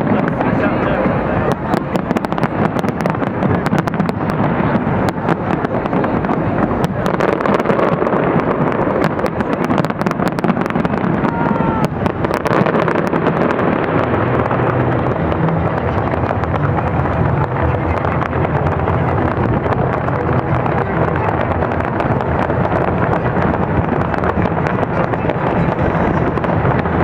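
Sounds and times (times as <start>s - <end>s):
fireworks crackling and banging: 0.0s - 27.0s
low rumble: 10.5s - 27.0s.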